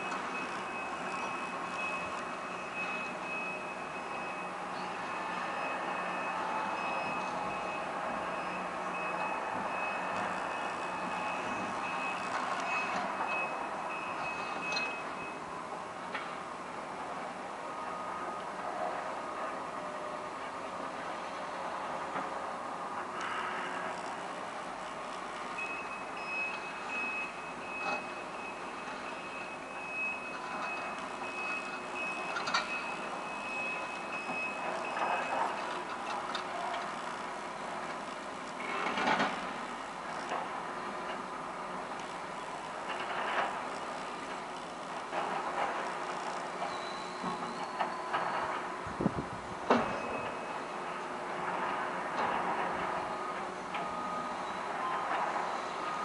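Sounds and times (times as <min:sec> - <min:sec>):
backup alarm beeping: 0:00.0 - 0:15.6, 0:25.5 - 0:36.0, 0:49.8 - 0:51.1
machinery running: 0:19.4 - 0:48.9.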